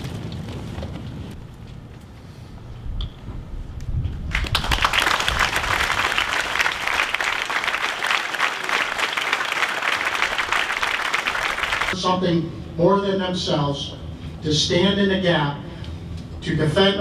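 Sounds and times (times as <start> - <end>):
audience applauding: 4.3 - 12.0.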